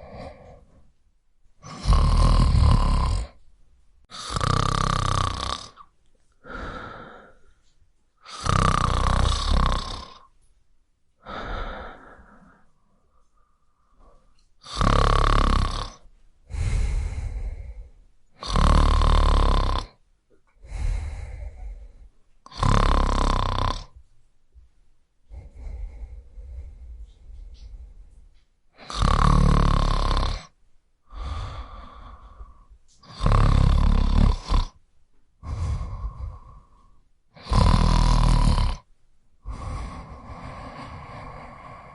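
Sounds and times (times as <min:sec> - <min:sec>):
person snoring: 0:00.0 - 0:00.8, 0:01.6 - 0:03.4, 0:04.1 - 0:07.5, 0:08.2 - 0:10.3, 0:11.2 - 0:12.7, 0:14.0 - 0:20.0, 0:20.6 - 0:24.0, 0:25.3 - 0:28.1, 0:28.8 - 0:34.8, 0:35.4 - 0:41.9
soft breath: 0:06.3 - 0:07.8, 0:11.2 - 0:14.4, 0:16.4 - 0:18.1, 0:20.6 - 0:22.2, 0:25.3 - 0:28.4, 0:31.0 - 0:33.1, 0:35.4 - 0:37.7, 0:39.4 - 0:41.9.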